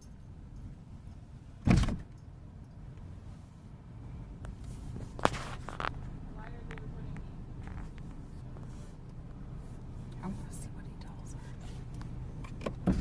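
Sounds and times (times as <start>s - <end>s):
low steady rumble: 0.0s - 13.0s
loud short thump: 1.6s - 2.1s.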